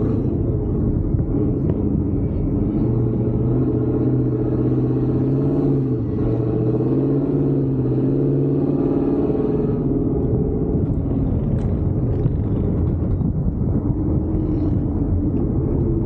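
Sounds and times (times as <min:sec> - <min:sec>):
engine running under throttle: 0:00.0 - 0:16.0.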